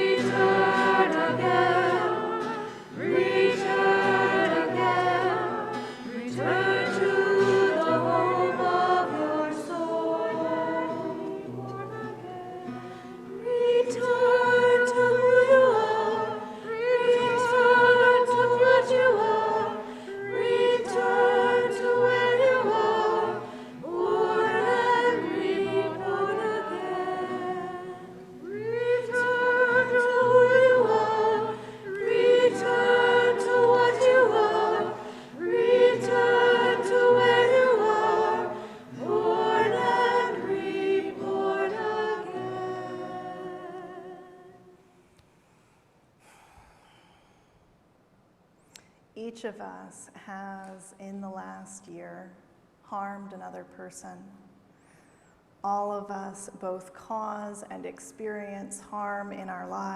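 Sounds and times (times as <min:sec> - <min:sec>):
choir singing: 0:00.0 - 0:44.8.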